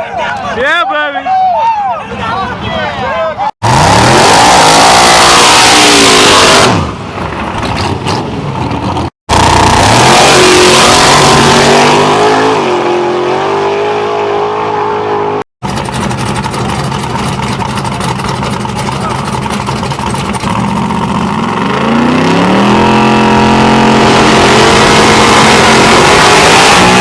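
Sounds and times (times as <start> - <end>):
drag car engines at full throttle: 3.6 - 27.0
steady quieter engine: 9.3 - 27.0.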